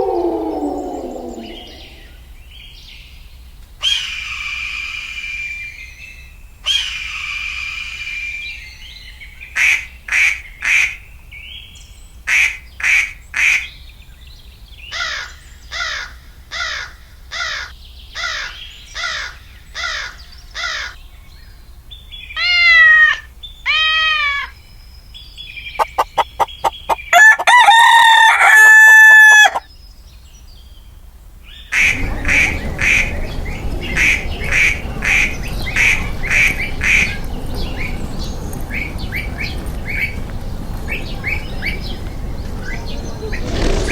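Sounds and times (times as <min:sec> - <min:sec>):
chirping and clucking: 0:00.0 - 0:02.2, 0:25.8 - 0:29.6, 0:31.8 - 0:43.9
rooster crowing: 0:00.0 - 0:02.2, 0:25.8 - 0:29.7
farmyard background noise: 0:25.7 - 0:29.7, 0:31.5 - 0:43.9
duck quacking: 0:25.8 - 0:27.0
fowl squawks: 0:25.8 - 0:29.6.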